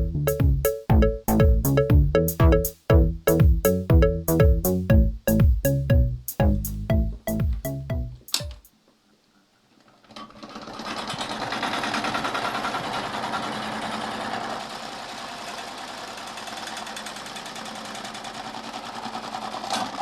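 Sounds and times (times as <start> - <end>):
electric fan rattling: 10.0 - 15.0.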